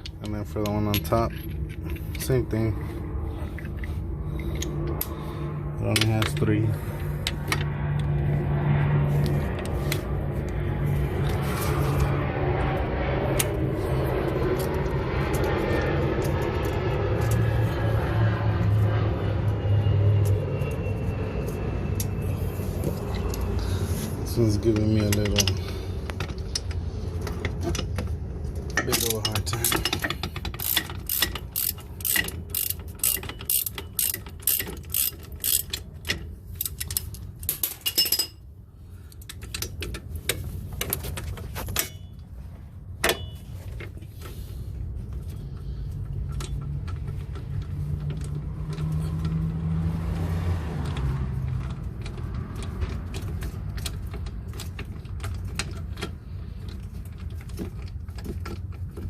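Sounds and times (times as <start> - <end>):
low steady hum: 0.0 - 49.9
ratchet wrench clicking: 29.0 - 38.3.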